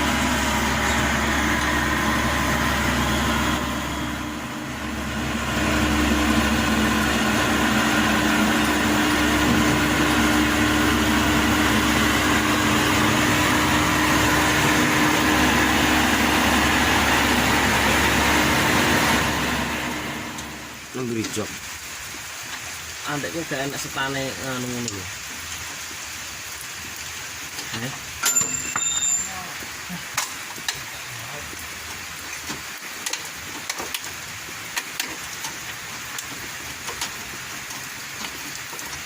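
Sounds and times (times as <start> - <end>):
combine harvester engine running: 0.0 - 20.9.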